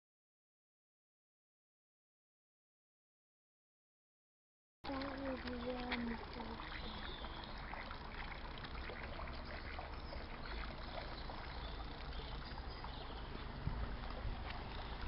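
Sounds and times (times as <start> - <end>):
trickling water: 4.8 - 15.0.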